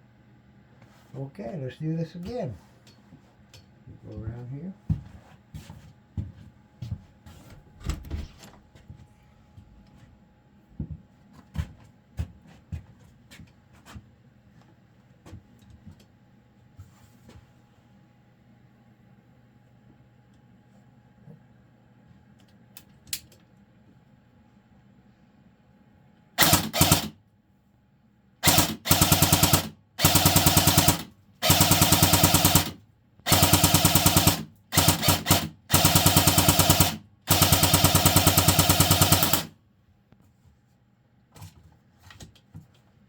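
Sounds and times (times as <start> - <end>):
bb gun full-auto bursts: 26.4 - 27.2, 28.4 - 39.5.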